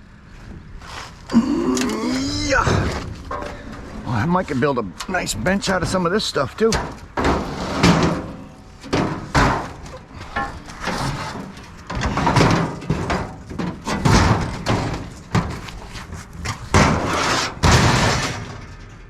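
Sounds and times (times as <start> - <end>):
scrap metal banging and clanking: 2.0 - 19.0.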